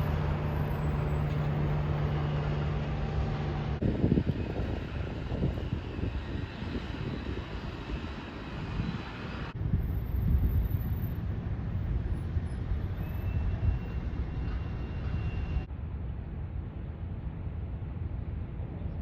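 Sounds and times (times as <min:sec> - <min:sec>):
low outdoor rumble: 0:00.0 - 0:19.0
wind on microphone: 0:03.6 - 0:16.2.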